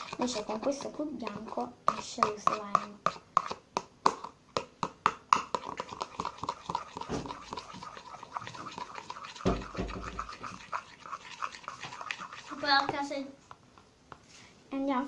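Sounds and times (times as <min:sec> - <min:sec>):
spoon scraping a bowl: 0:00.0 - 0:04.3, 0:05.3 - 0:13.0.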